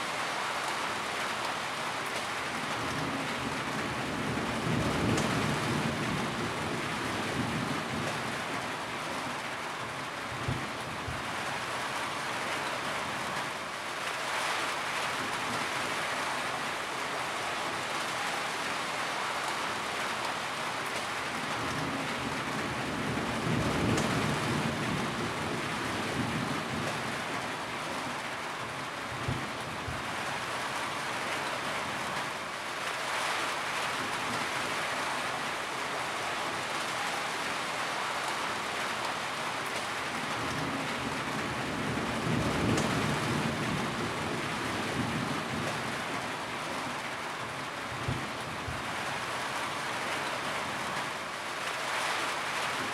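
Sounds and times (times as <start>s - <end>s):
steady rainfall: 0.0s - 52.9s
low rumble of thunder: 2.7s - 8.7s, 21.5s - 27.5s, 40.3s - 46.3s.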